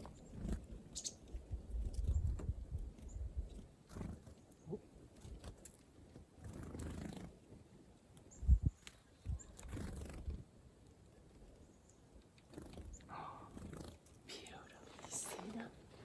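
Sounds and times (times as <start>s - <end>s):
small birds chirping: 0.0s - 16.0s.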